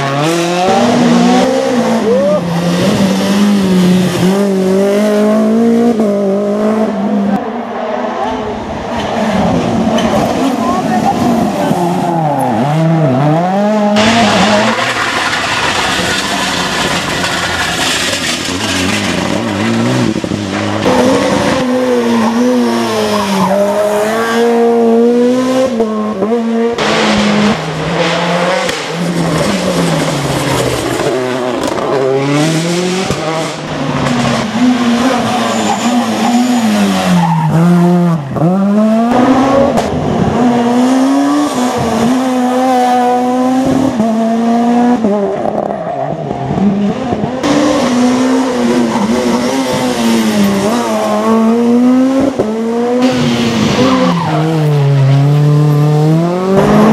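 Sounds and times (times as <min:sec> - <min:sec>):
rally car engines revving: 0:00.0 - 0:56.9.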